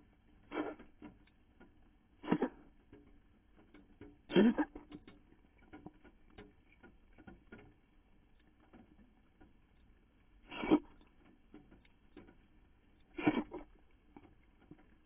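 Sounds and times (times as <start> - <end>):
faint ticks: 0.0 - 15.0
cat hacking coughs: 2.2 - 2.6, 4.3 - 4.8, 13.2 - 13.6.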